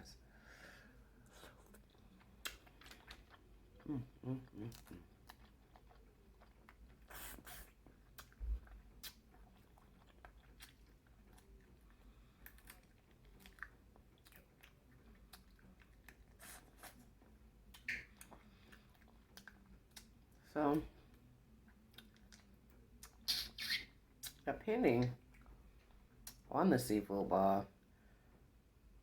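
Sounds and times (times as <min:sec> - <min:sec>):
person chewing food: 0:01.0 - 0:23.3.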